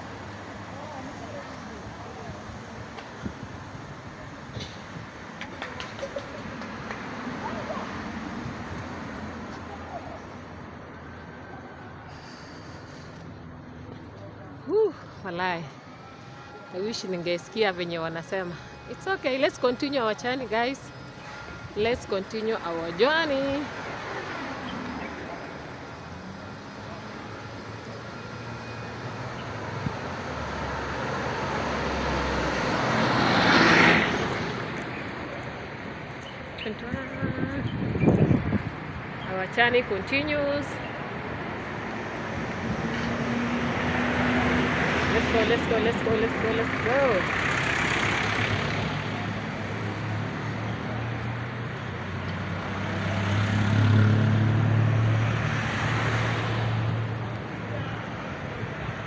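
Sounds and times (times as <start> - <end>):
city street traffic: 0.0 - 59.0
vehicle engine hum: 18.6 - 59.0
vehicle driving past: 42.4 - 57.2.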